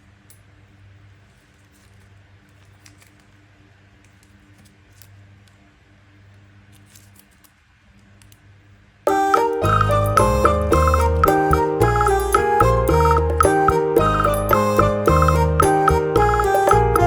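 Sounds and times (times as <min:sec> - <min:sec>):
packaging clicks and rustles: 0:01.2 - 0:03.4, 0:06.7 - 0:08.4
loud music: 0:09.1 - 0:17.0.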